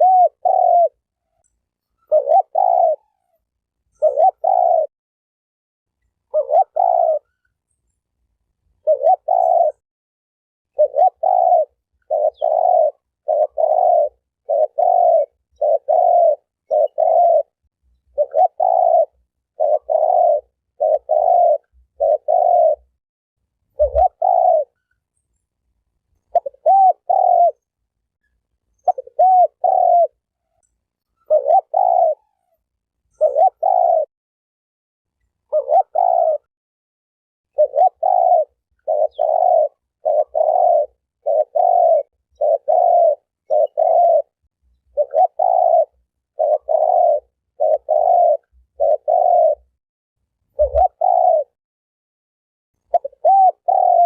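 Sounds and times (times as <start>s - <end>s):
dove cooing: 0.0s - 1.4s, 2.0s - 4.9s, 6.3s - 7.5s, 8.8s - 9.8s, 10.7s - 23.0s, 23.7s - 24.9s, 26.3s - 27.7s, 28.8s - 30.6s, 31.2s - 34.1s, 35.4s - 36.5s, 37.5s - 49.8s, 50.5s - 51.6s, 52.8s - 54.0s.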